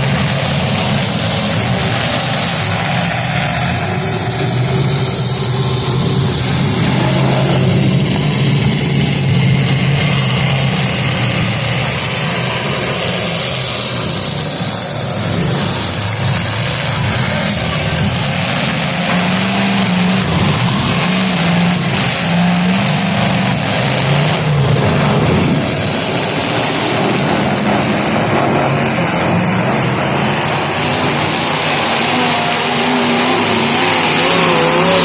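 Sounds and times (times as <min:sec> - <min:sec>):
car engines revving: 0:00.0 - 0:35.0.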